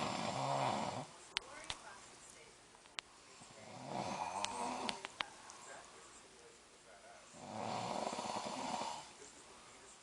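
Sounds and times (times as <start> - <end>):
man snoring: 0.0 - 1.1, 3.5 - 5.0, 7.3 - 9.1.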